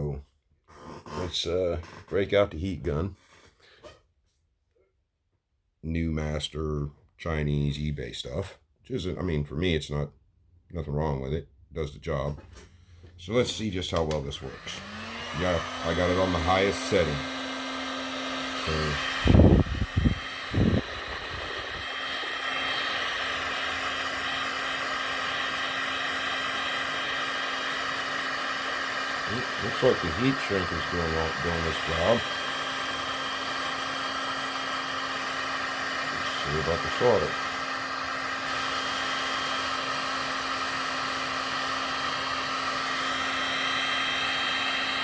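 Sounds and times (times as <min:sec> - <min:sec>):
heat gun blowing air: 0:13.4 - 0:45.0.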